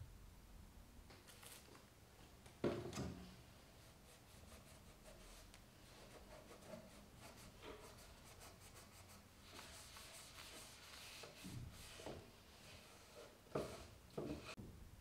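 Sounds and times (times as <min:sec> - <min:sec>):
scratchy rubbing: 0:04.0 - 0:14.6.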